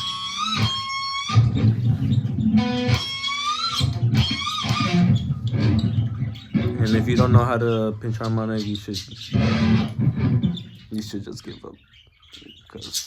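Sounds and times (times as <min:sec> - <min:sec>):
guitar pinch harmonic squeal: 0:00.0 - 0:07.0
electric guitar low riff: 0:00.0 - 0:07.4, 0:09.4 - 0:10.8.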